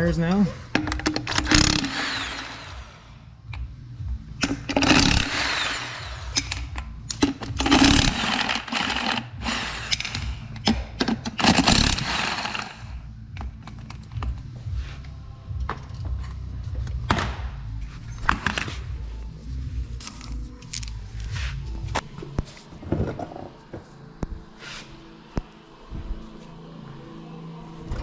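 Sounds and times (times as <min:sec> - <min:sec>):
power tool bursts: 0:01.2 - 0:03.0, 0:04.7 - 0:06.6, 0:07.6 - 0:10.2, 0:11.4 - 0:12.8.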